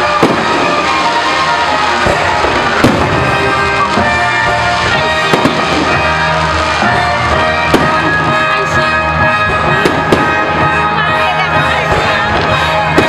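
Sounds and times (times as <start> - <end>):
fireworks bangs: 0.0 - 13.0
loud music: 0.0 - 13.0.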